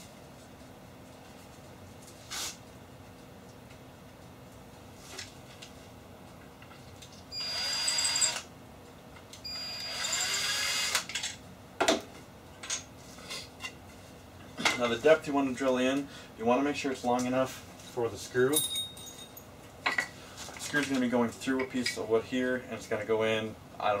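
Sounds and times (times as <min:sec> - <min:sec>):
power drill drilling into wood: 0:07.4 - 0:08.4, 0:09.5 - 0:11.1.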